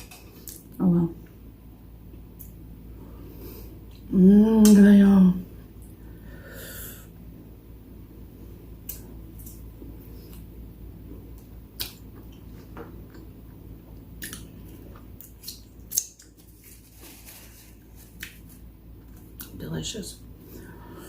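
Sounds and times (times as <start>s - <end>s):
low steady hum: 0.0s - 21.0s
wet chewing and smacking: 11.3s - 16.5s.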